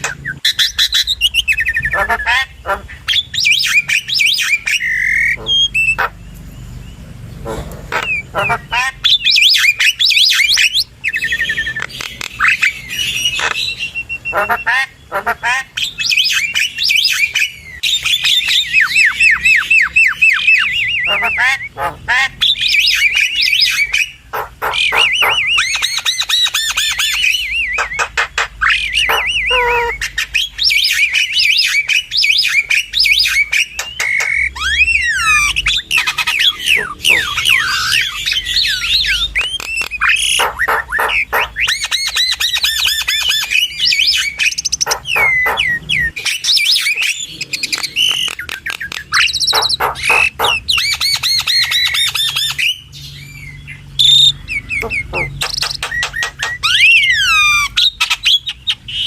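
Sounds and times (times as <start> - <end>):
bird whistling gliding notes: 0.0 - 2.3, 3.0 - 6.9, 7.9 - 14.7, 15.8 - 21.8, 22.4 - 59.0
birds chattering and squawking: 0.0 - 59.0.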